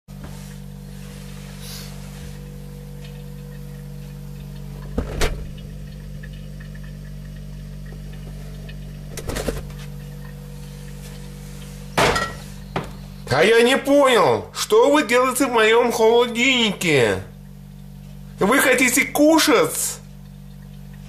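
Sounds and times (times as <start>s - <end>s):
steady low hum: 0.1s - 21.0s.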